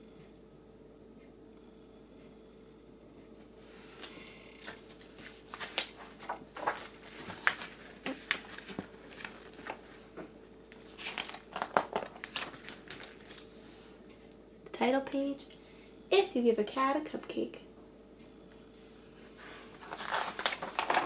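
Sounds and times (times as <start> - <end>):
book pages rustling: 4.6 - 14.0, 19.4 - 21.0.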